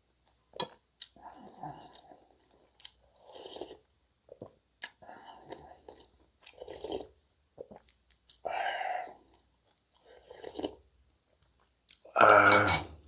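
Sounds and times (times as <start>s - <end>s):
person chewing: 0.6s - 8.4s, 9.1s - 10.8s.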